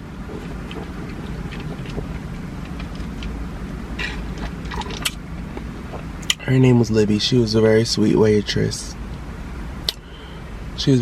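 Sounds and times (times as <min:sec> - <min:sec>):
mouth noise: 0:00.0 - 0:03.2
low vehicle cabin rumble: 0:00.0 - 0:11.0.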